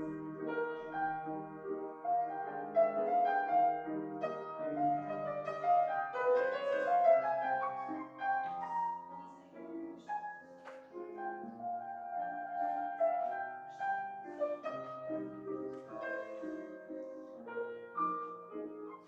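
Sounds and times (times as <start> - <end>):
slow piano chords: 0.0 - 19.0.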